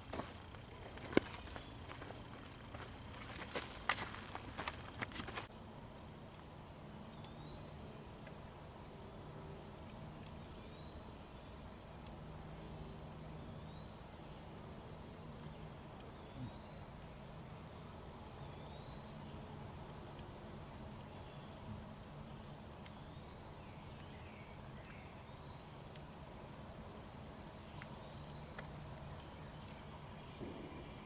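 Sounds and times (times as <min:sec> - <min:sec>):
insect buzzing: 0:16.9 - 0:23.2, 0:25.5 - 0:29.7.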